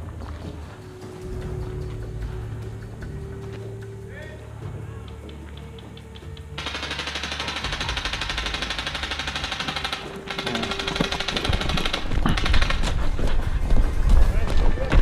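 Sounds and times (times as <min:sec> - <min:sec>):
airsoft rifle firing full auto: 0:06.6 - 0:13.0.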